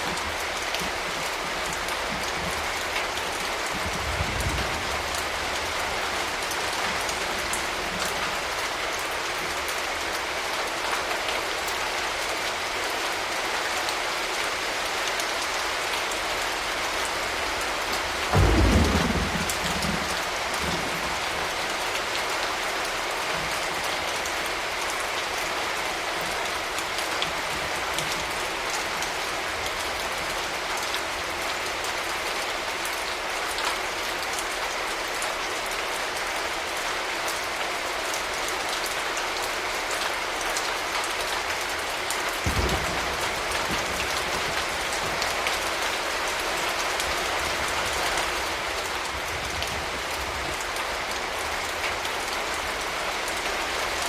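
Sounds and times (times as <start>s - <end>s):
steady rain falling: 0.0s - 54.0s
thunder clap rumbling: 18.3s - 21.6s, 42.4s - 45.2s.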